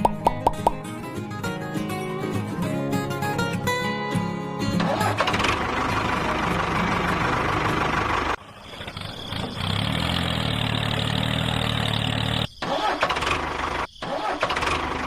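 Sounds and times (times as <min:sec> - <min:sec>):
engine idling: 0:04.8 - 0:15.0.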